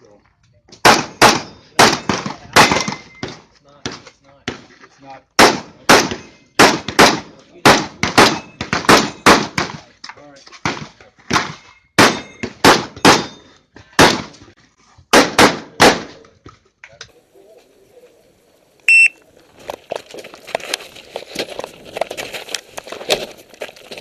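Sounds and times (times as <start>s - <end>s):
shotgun firing: 0.8s - 3.1s, 5.4s - 9.8s, 10.6s - 13.4s, 14.0s - 14.3s, 15.1s - 16.1s
short high electronic beep: 18.9s - 19.2s
scuffling: 19.2s - 24.0s.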